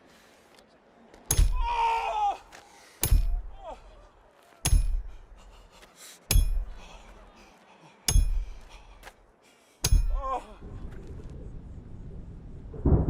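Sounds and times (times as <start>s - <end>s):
wavering cry of pain: 1.4s - 4.1s, 9.9s - 10.6s
hammer striking metal nail: 4.6s - 5.0s, 6.3s - 6.7s, 8.1s - 8.5s, 9.8s - 10.2s.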